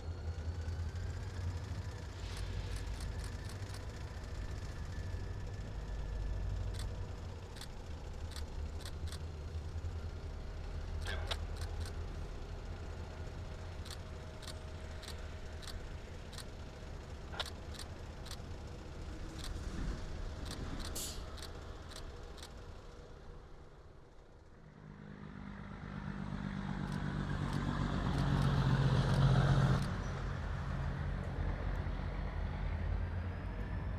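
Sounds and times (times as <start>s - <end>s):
diesel locomotive rumbling: 0.0s - 33.9s
sharp metallic clicks: 2.3s - 4.0s, 6.6s - 9.3s, 11.0s - 12.0s, 13.8s - 16.6s, 17.3s - 18.4s, 19.4s - 19.6s, 20.4s - 22.6s.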